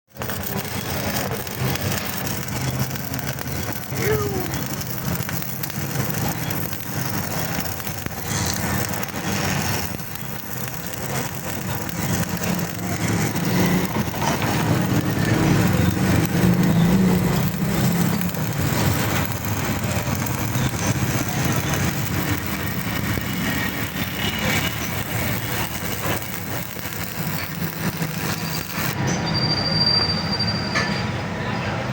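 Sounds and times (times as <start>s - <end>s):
lathe running: 0.1s - 29.0s.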